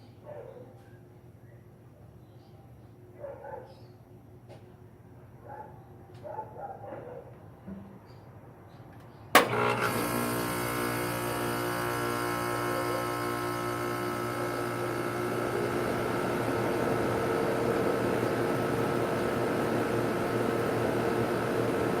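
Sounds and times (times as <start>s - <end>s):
air conditioner humming and whirring: 8.4s - 22.0s.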